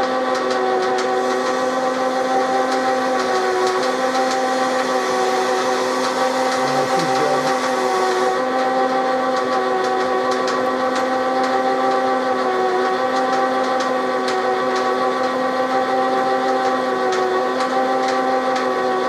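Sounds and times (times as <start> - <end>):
light ticks while drilling: 0.0 - 15.8, 16.4 - 19.0
lathe whining: 1.1 - 12.9.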